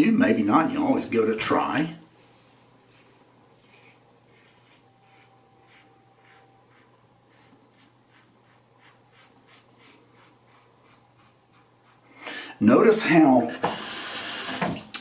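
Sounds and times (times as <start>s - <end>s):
razor scraping stubble: 2.2s - 12.0s.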